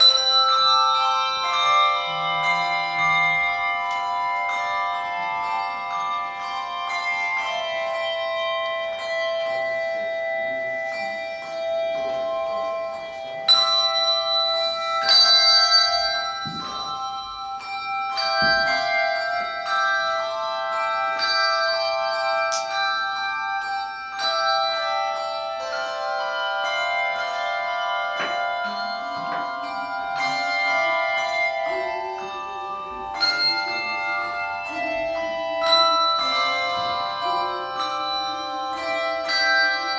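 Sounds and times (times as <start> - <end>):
handbell choir playing: 0.0 - 39.9.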